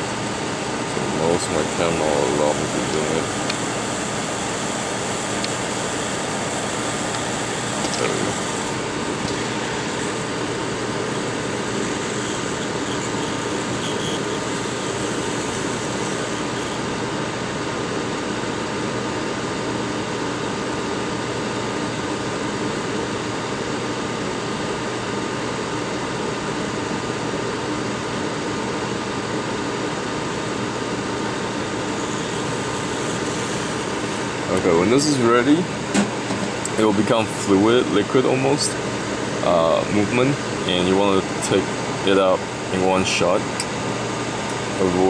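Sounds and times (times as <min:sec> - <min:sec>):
hot-air rework station fan hiss: 0:00.0 - 0:45.0.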